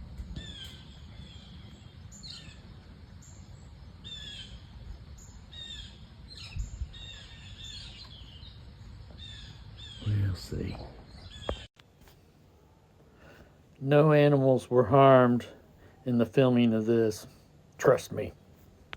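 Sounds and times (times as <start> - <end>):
birds chirping: 0.0 - 11.7
steady low rumble: 0.0 - 11.7.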